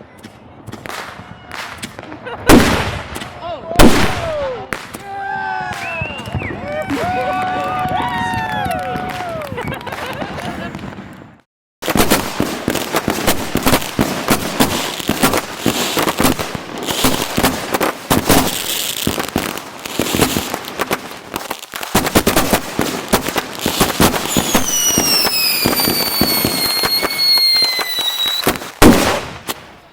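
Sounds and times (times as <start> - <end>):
fireworks bangs and crackles: 0.0 - 29.9
falling firework whistle: 5.2 - 9.9, 23.8 - 29.3.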